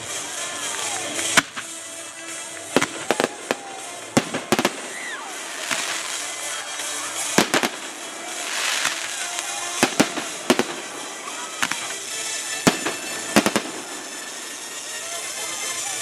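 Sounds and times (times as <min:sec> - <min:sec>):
fireworks crackling: 0:00.0 - 0:16.0
steady hiss: 0:00.0 - 0:16.0
fireworks bangs: 0:01.2 - 0:16.0.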